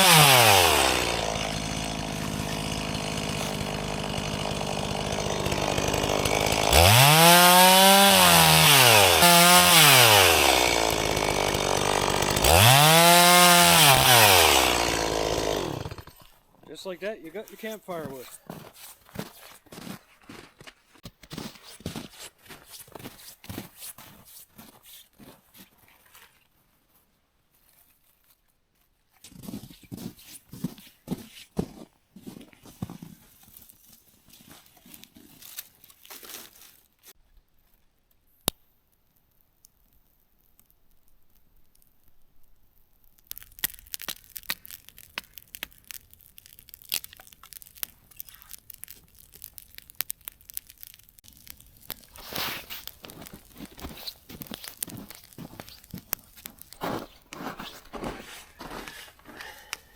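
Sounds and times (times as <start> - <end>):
tearing and crinkling: 17.3 - 26.4, 32.6 - 37.2, 39.6 - 59.8.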